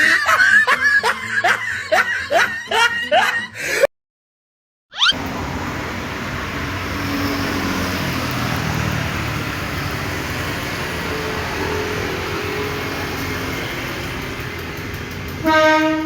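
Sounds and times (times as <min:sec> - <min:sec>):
vehicle engine and road noise: 0:05.1 - 0:16.0.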